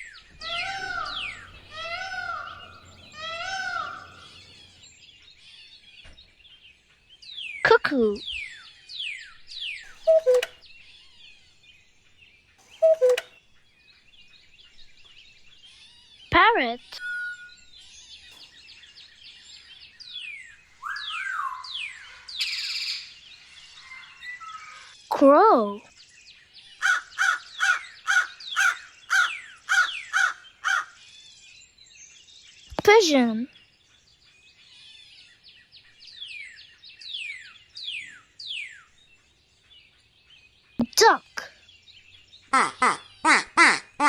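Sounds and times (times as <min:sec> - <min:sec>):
cuckoo calling: 0:00.0 - 0:04.9, 0:09.9 - 0:10.6, 0:12.6 - 0:13.3, 0:16.8 - 0:17.7, 0:20.6 - 0:25.0, 0:26.8 - 0:30.9
songbirds chirping: 0:00.0 - 0:44.0
crow cawing: 0:00.3 - 0:04.8, 0:26.8 - 0:31.0.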